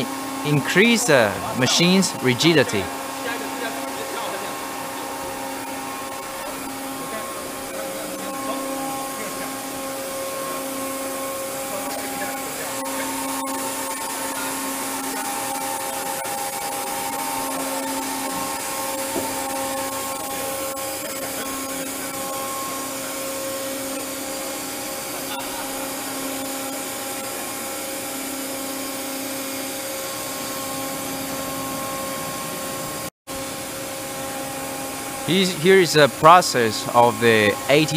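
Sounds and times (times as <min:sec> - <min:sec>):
low machine whine: 0:00.0 - 0:24.4, 0:29.9 - 0:37.9.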